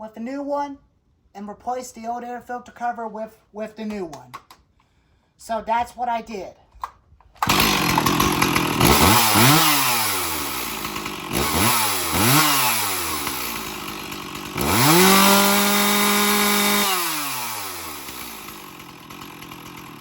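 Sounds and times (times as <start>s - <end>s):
chainsaw engine revving: 7.4s - 20.0s.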